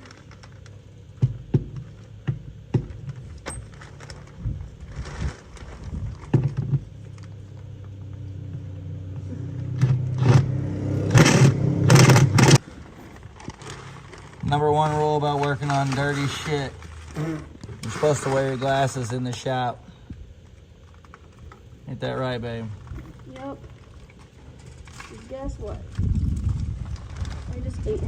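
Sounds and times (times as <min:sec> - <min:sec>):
impact wrench whirring and hammering: 0:09.2 - 0:12.7.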